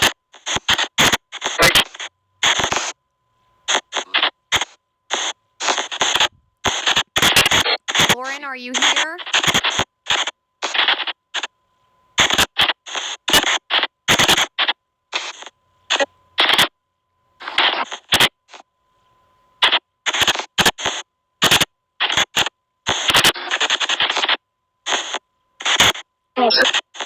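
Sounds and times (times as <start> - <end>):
faint high tone: 8.1 - 9.2.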